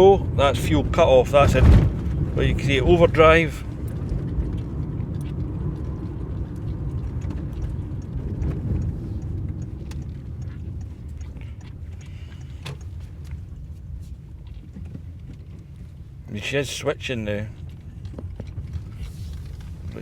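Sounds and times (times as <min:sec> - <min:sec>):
car engine and road noise: 0:00.0 - 0:20.0.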